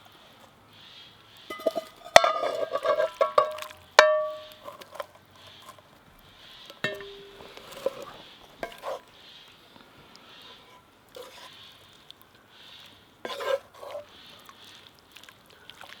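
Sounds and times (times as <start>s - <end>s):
metal utensils clinking: 1.5s - 5.8s, 6.8s - 9.1s.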